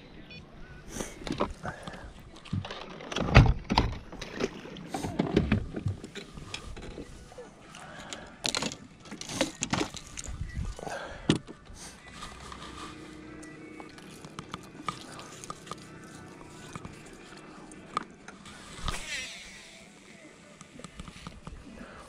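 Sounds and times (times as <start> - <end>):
knocks and thumps in fishing boat: 2.5 - 7.1.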